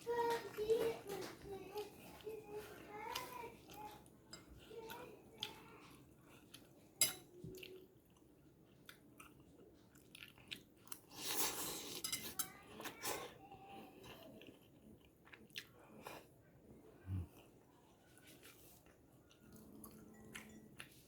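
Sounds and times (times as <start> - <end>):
person chewing: 1.7 - 13.3, 13.9 - 21.0
cutlery clicking on a plate: 7.0 - 7.3, 12.0 - 12.5.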